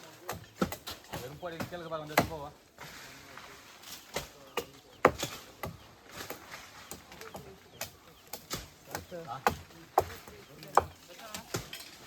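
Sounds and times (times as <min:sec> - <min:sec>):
blade chopping wood: 0:04.1 - 0:06.4.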